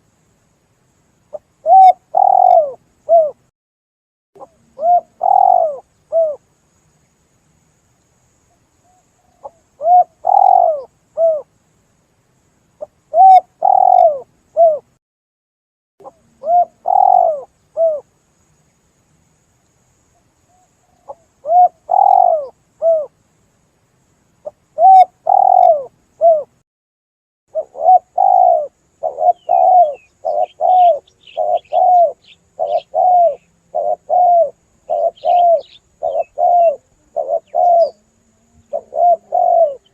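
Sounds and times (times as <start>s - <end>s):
small bird chirping: 1.2s - 3.5s, 4.4s - 7.2s, 7.8s - 11.5s, 12.8s - 15.0s, 16.0s - 18.9s, 19.6s - 23.1s, 24.4s - 26.6s, 27.5s - 39.9s
dove cooing: 1.3s - 3.4s, 4.4s - 6.4s, 9.2s - 11.5s, 12.8s - 14.9s, 16.0s - 18.0s, 21.0s - 23.1s, 24.4s - 26.5s, 27.5s - 39.9s.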